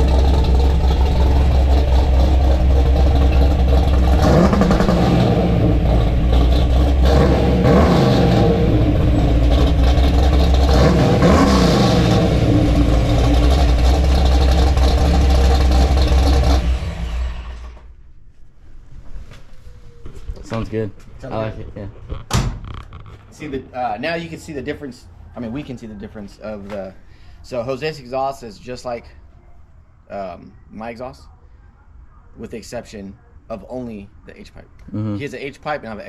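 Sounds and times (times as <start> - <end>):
car engine idling and revving: 0.0 - 17.9
engine shutting off: 0.0 - 17.9.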